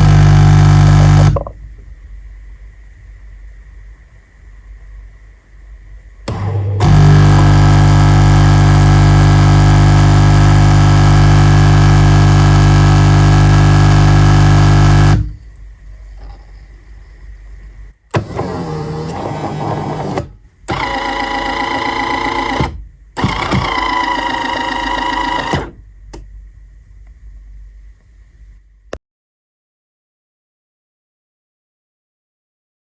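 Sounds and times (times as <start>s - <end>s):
coffee grinder humming: 0.0s - 1.5s, 6.3s - 15.4s, 18.8s - 25.7s.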